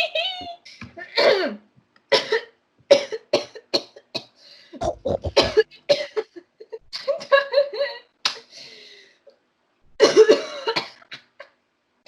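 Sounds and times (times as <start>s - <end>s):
person coughing: 4.8s - 6.2s.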